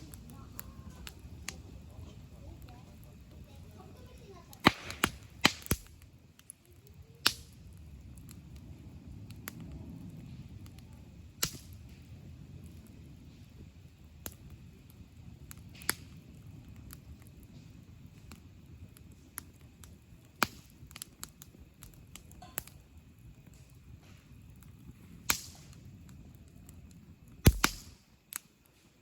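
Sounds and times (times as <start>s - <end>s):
campfire burning: 0.0s - 29.0s
wood popping and snapping: 4.6s - 6.6s, 20.3s - 22.7s, 25.2s - 25.8s, 27.4s - 28.5s.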